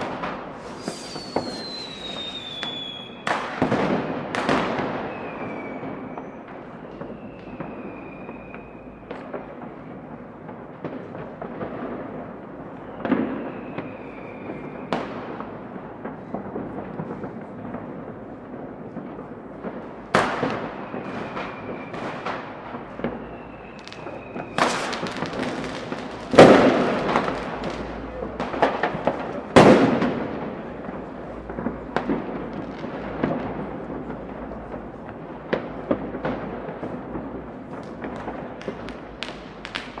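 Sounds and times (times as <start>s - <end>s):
firework whistle: 0.0s - 10.1s, 12.6s - 15.2s, 20.2s - 28.2s
fireworks big bangs: 0.0s - 40.0s
fireworks crackling and popping: 0.0s - 40.0s.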